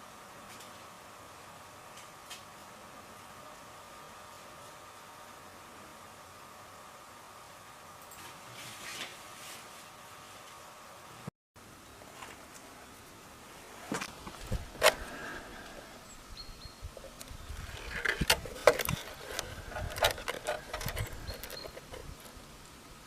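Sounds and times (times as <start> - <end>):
rustling: 13.5 - 16.2, 16.9 - 22.7
objects clicking and knocking: 17.1 - 22.3.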